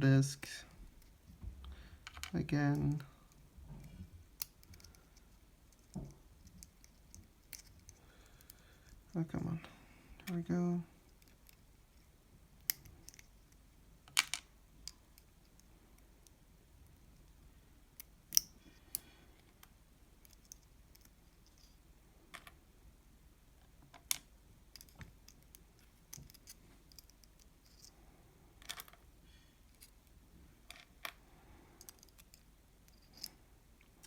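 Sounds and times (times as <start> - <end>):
small metal parts clicking: 4.4 - 9.0, 23.9 - 27.9, 30.7 - 33.4.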